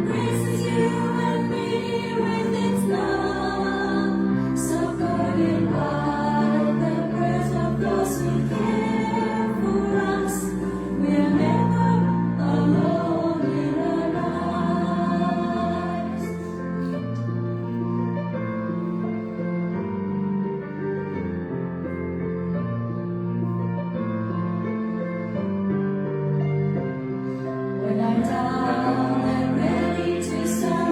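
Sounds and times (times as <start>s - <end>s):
choir singing held notes: 0.0s - 16.6s, 27.8s - 30.9s.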